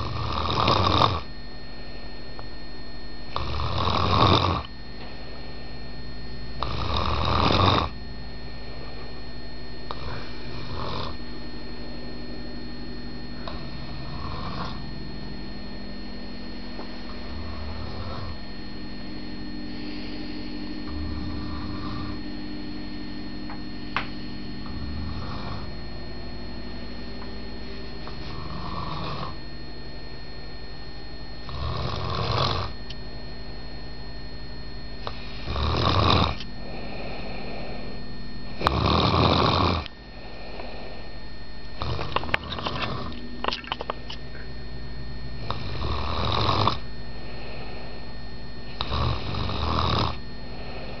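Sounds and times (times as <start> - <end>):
snoring: 0.0 - 1.3, 3.3 - 4.7, 6.6 - 8.0, 9.9 - 11.2, 13.4 - 14.8, 17.7 - 18.3, 19.7 - 22.2, 25.0 - 25.7, 28.1 - 29.4, 31.4 - 32.8, 35.0 - 37.8, 38.6 - 41.1, 41.8 - 43.2, 45.4 - 48.0, 48.6 - 51.0.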